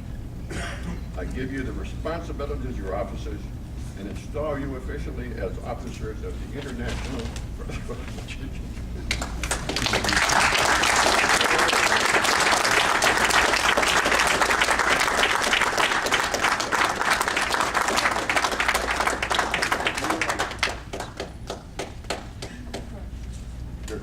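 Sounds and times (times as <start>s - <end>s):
audience applauding: 9.1s - 22.9s.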